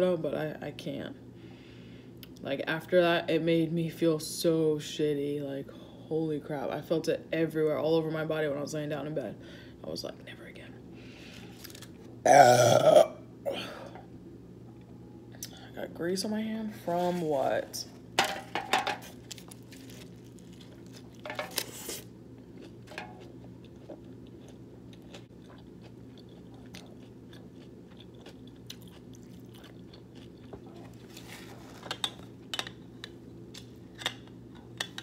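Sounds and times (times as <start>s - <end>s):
steady low hum: 0.0s - 35.0s
person chewing: 19.1s - 32.2s.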